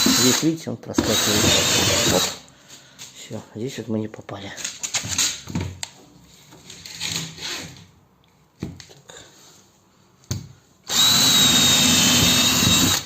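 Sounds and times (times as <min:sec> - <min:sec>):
power drill drilling into floor: 0:01.0 - 0:02.4, 0:10.9 - 0:13.0.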